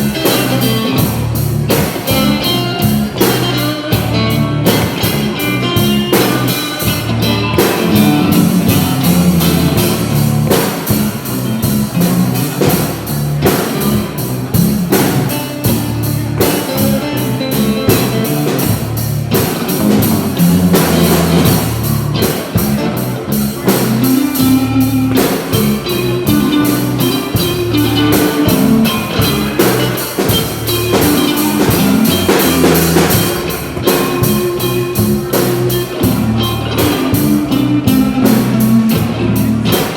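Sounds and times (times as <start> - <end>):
bass guitar: 0.0 - 39.9
drum kit steady beat: 0.0 - 39.9
electric guitar: 0.0 - 39.9.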